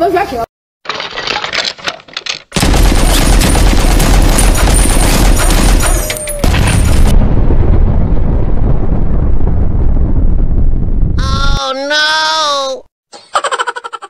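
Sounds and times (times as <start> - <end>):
dense crackling: 1.9 - 12.0
explosion boom: 2.6 - 11.6
deep rumble: 6.4 - 11.6.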